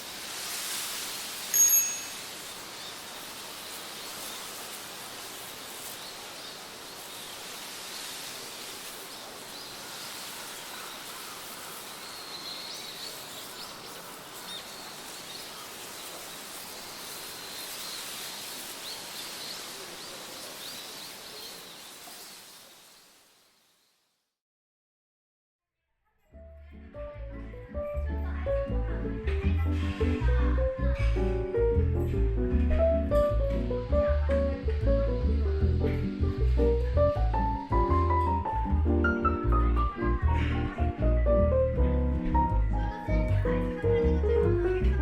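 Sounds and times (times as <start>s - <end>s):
steady background hiss: 0.0s - 24.1s.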